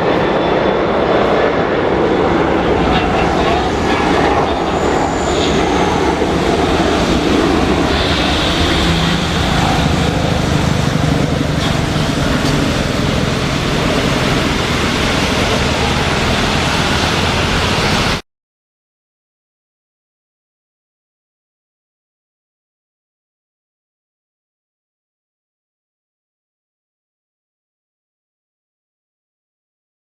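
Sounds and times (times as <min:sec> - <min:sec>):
jet engines roaring: 0:00.0 - 0:18.2
heavy rain: 0:01.7 - 0:18.2.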